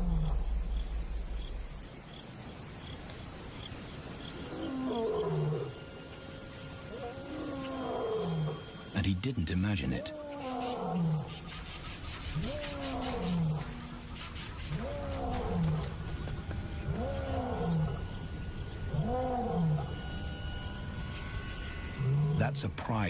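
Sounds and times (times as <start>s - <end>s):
lion roaring: 6.9s - 8.8s, 10.0s - 11.4s, 12.3s - 14.0s, 14.7s - 20.2s.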